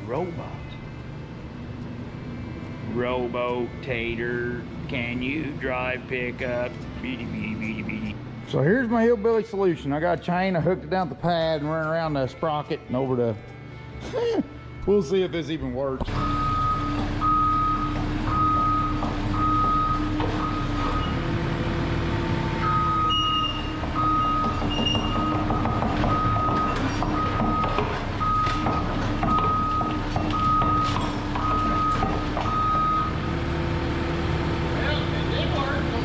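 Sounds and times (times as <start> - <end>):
diesel engine running: 0.0 - 12.5, 16.0 - 36.0
travel alarm beeping: 16.1 - 21.2, 22.5 - 33.3.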